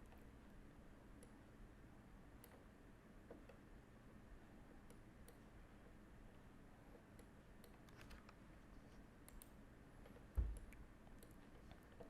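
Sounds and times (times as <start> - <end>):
low room hum: 0.0 - 12.0
computer mouse clicks: 2.4 - 3.6, 4.8 - 5.5, 7.0 - 8.4, 9.2 - 12.0.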